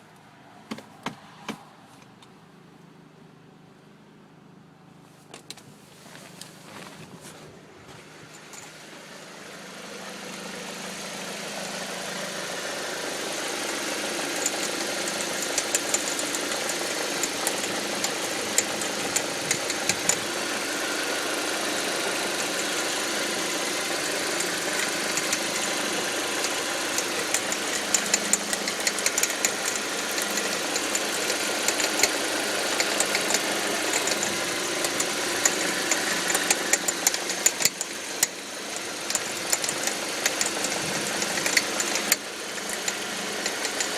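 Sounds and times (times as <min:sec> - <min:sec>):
car engine running: 0:05.0 - 0:43.9
rattle of sharp clicks: 0:13.6 - 0:20.4, 0:22.3 - 0:43.9.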